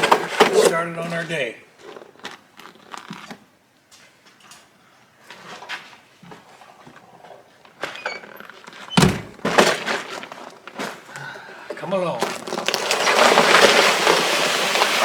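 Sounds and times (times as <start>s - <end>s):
rustling and handling noises: 0.0s - 11.1s, 11.8s - 15.0s
door banging shut: 8.9s - 9.8s.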